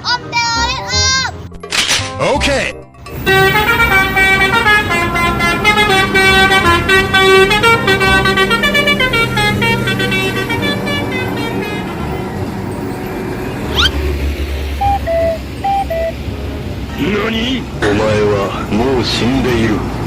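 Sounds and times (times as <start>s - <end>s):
multi-tone bus air horn tune: 3.1s - 12.6s.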